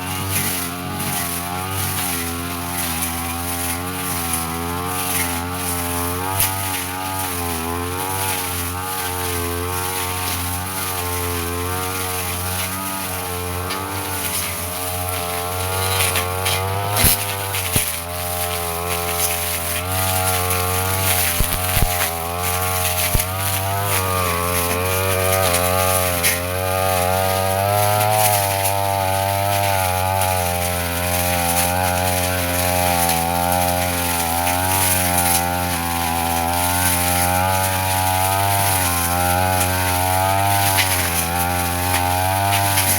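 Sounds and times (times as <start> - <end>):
brush cutter cutting grass: 0.0 - 42.9.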